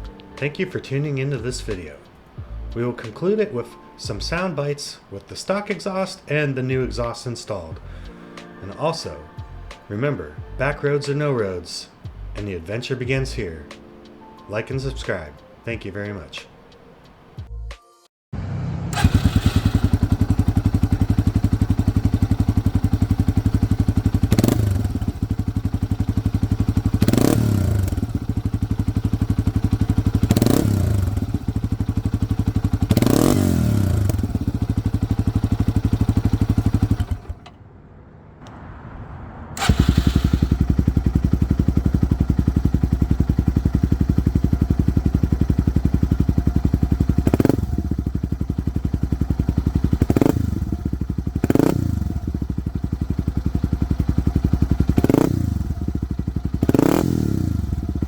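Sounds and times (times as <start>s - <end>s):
motorcycle engine idling and revving: 18.4s - 58.0s.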